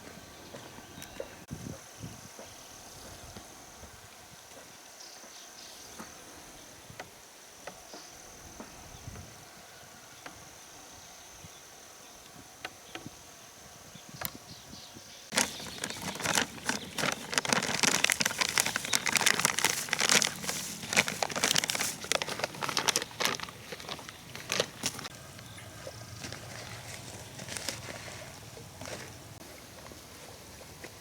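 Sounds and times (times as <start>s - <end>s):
dry material crackling and crumpling: 15.3s - 25.1s, 26.2s - 29.2s.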